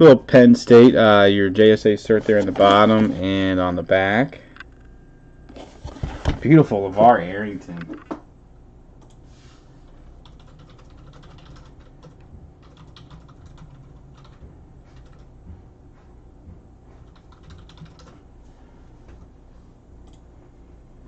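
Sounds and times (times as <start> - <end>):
low background hum: 0.0 - 21.0
typing on computer keyboard: 10.2 - 15.3, 17.0 - 18.2.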